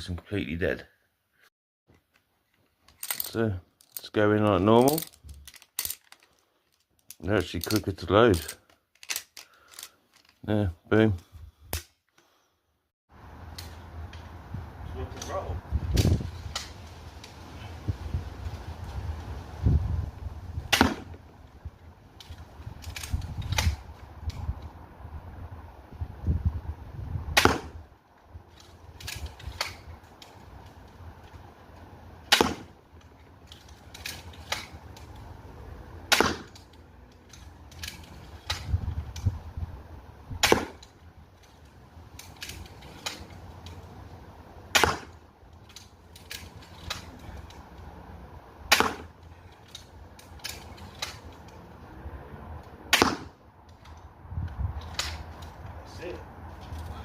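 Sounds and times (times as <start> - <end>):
crossbow mechanism clicks: 8.4 - 10.4
crossbow shot snapping: 20.7 - 21.2, 27.4 - 27.8, 32.3 - 32.7, 36.1 - 36.8, 40.4 - 40.9, 44.7 - 45.2, 48.7 - 49.1, 52.9 - 53.4.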